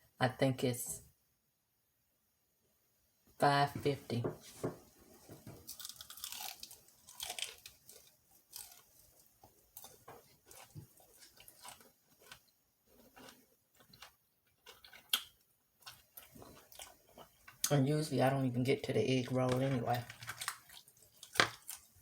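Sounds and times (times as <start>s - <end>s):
wet chewing: 5.2s - 17.8s, 19.2s - 22.0s
crunching crispy food: 5.3s - 17.8s, 19.2s - 22.0s.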